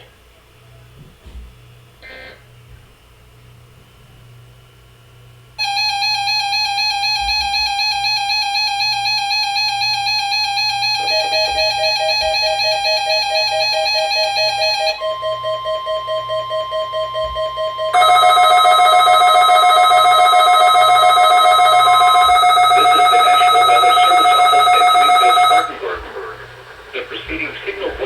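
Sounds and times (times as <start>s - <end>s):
buzzy electronic alarm beep: 5.6s - 17.3s, 17.9s - 25.7s
faint hum: 5.6s - 28.0s.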